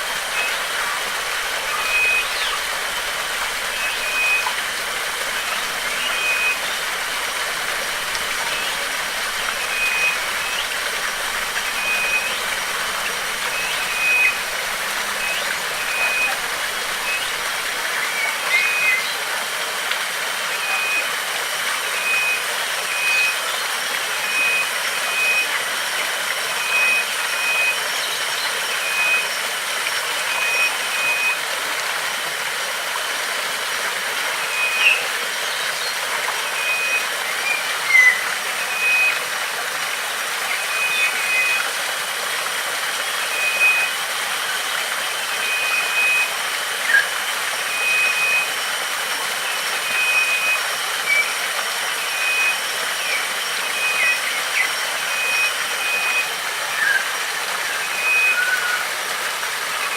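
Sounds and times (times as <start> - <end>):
high insect-like whine: 0.0 - 17.9
bird chirps: 0.0 - 19.2, 34.5 - 35.9, 36.5 - 39.2, 52.0 - 58.8
water rushing: 0.0 - 59.9.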